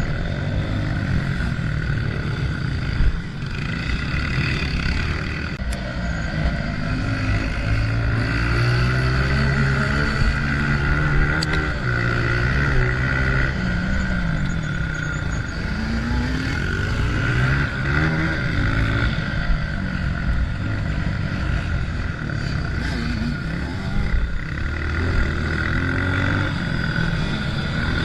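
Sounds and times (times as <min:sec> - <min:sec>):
dirt bike engine revving: 0:00.0 - 0:28.0.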